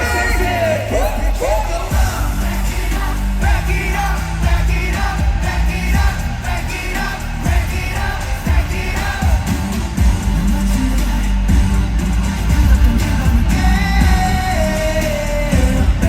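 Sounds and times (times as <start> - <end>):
group singing live pop music: 0.0 - 16.0.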